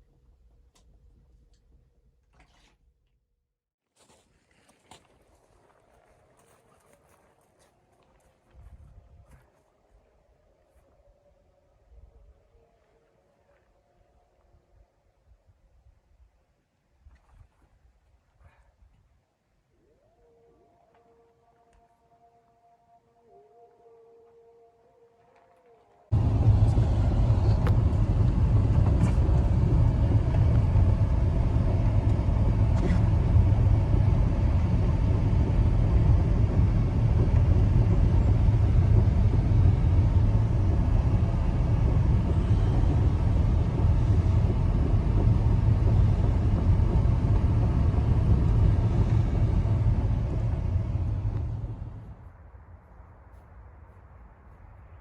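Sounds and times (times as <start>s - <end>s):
loud low rumble with hiss: 26.1s - 53.2s.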